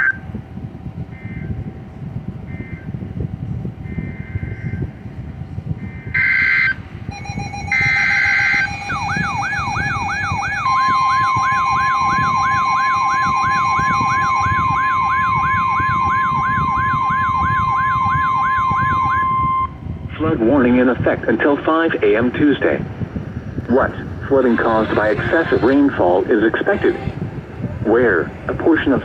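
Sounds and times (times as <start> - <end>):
steady warning tone: 5.7 - 29.0
alarm sweeping rapidly upward: 6.2 - 19.7
two-tone digital data bursts: 6.2 - 19.7.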